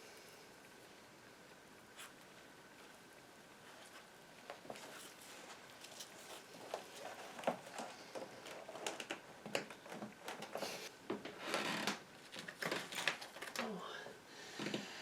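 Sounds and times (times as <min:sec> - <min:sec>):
hands clicking and rustling: 0:03.8 - 0:13.7.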